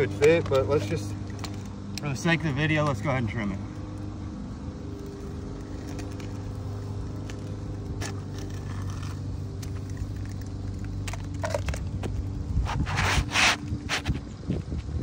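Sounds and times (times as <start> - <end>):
low mechanical hum: 0.0 - 15.0
shingle being trimmed: 5.0 - 14.2.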